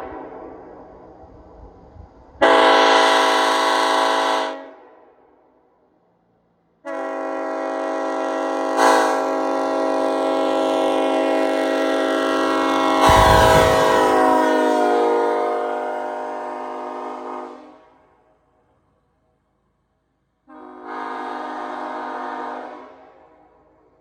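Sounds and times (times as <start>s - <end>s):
locomotive air horn blasts: 2.4s - 4.7s, 6.8s - 15.6s, 20.5s - 23.2s.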